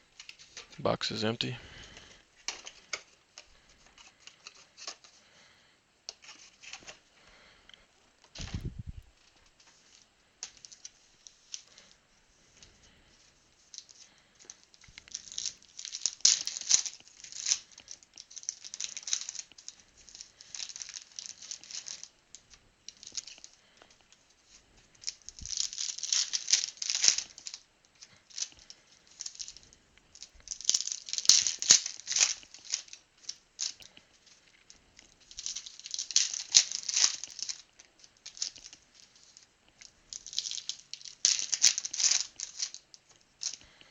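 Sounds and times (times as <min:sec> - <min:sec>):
cards and wrappers shuffling: 0:00.2 - 0:05.4, 0:06.1 - 0:07.6, 0:08.2 - 0:43.9
card pack wrappers tearing and crinkling: 0:14.5 - 0:22.1, 0:22.9 - 0:23.8, 0:25.0 - 0:34.0, 0:35.2 - 0:43.8.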